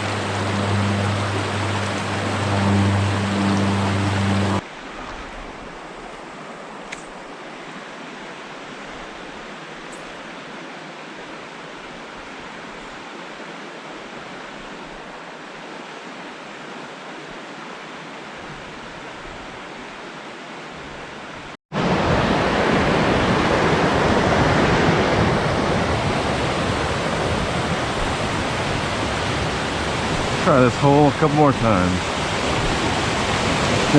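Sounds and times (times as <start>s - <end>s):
creek rushing: 0.0s - 33.9s
faint click: 6.8s - 7.2s.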